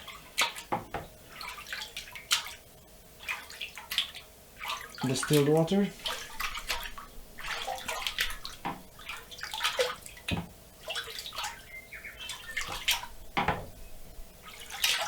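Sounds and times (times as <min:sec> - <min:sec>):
water splashing and dripping: 0:00.0 - 0:13.6, 0:14.4 - 0:15.0
dull knocks: 0:13.3 - 0:13.8.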